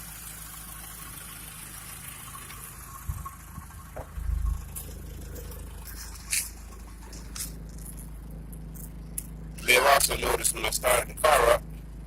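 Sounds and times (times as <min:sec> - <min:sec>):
car engine idling: 0:00.0 - 0:12.0
short low bumps: 0:02.5 - 0:09.6.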